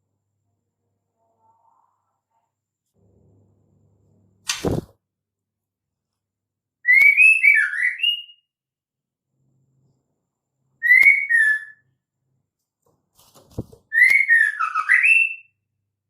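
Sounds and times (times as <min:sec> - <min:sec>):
bird whistled calls: 0:10.8 - 0:11.8, 0:13.9 - 0:15.5.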